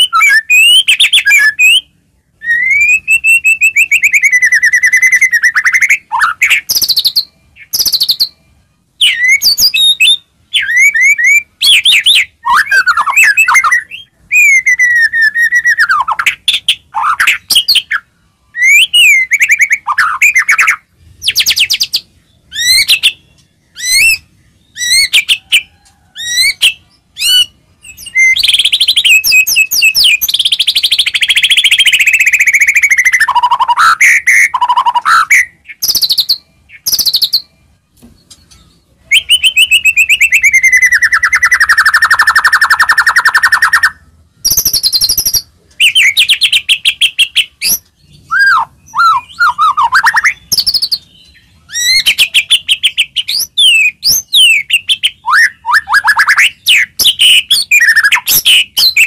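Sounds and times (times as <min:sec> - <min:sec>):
songbird whistling and trilling: 0:00.0 - 0:59.0.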